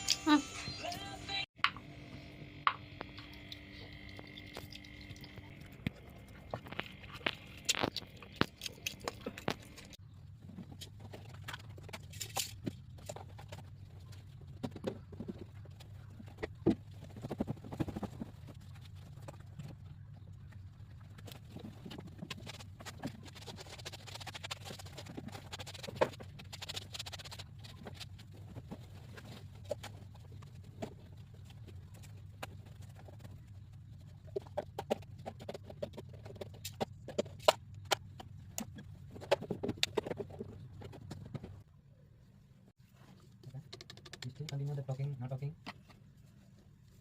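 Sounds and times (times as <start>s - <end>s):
low hum: 1.4s - 35.4s.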